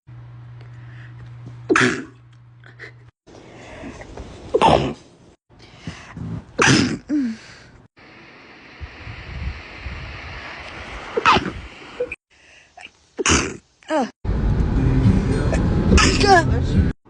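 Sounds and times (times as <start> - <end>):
stifled sneezes: 1.7 - 2.2, 4.5 - 5.1, 6.6 - 7.4, 11.2 - 11.6, 13.2 - 14.1, 16.0 - 16.4.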